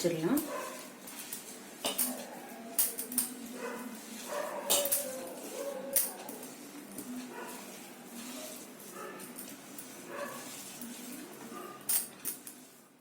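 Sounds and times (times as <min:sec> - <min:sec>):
hands mixing crumbly dough: 0:00.0 - 0:13.0.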